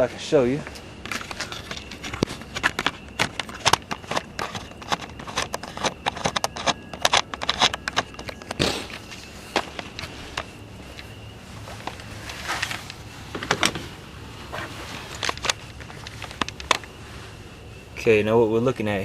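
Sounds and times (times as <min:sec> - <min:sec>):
handling clicks and knocks: 0:00.7 - 0:17.0
footsteps: 0:08.7 - 0:17.4.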